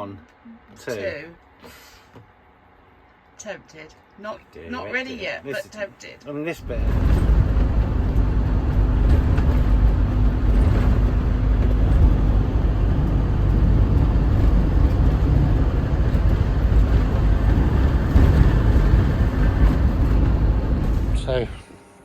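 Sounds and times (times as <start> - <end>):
faint steady hum: 0.0 - 6.8
low vehicle rumble: 6.6 - 21.8.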